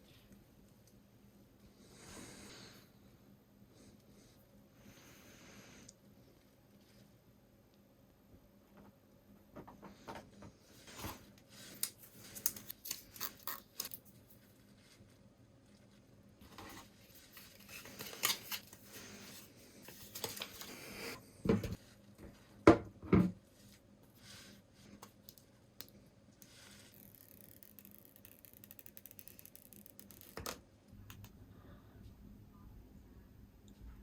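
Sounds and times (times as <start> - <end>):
cardboard packaging rustling: 16.4 - 20.8.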